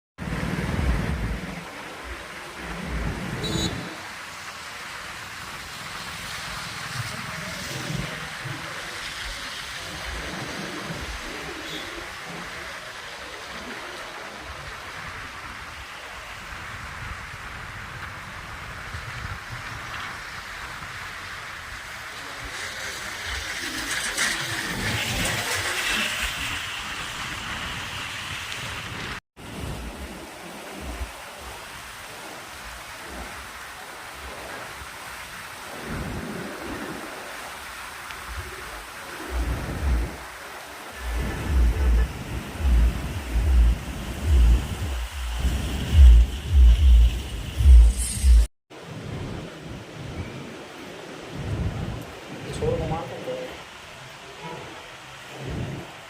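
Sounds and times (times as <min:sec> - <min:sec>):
heavy rain: 0:00.2 - 0:56.0
water rushing: 0:00.2 - 0:56.0
low rumbles: 0:41.0 - 0:48.5.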